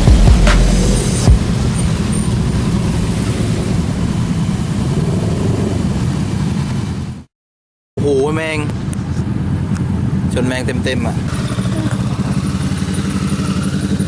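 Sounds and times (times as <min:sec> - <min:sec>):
motorcycle engine running: 0:00.0 - 0:07.2, 0:08.8 - 0:14.0
wind rush on microphone: 0:01.2 - 0:07.2.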